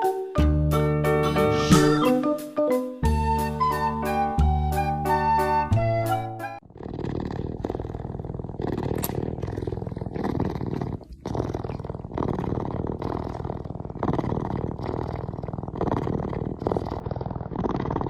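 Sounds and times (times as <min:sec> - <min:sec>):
animal growling: 0:06.6 - 0:18.0.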